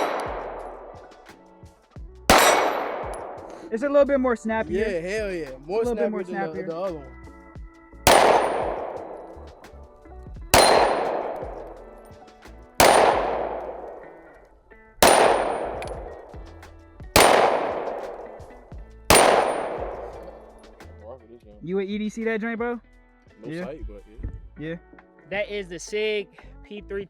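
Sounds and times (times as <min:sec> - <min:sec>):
pistol shots: 0:00.0 - 0:01.4, 0:02.3 - 0:03.7, 0:08.1 - 0:09.8, 0:10.5 - 0:20.8.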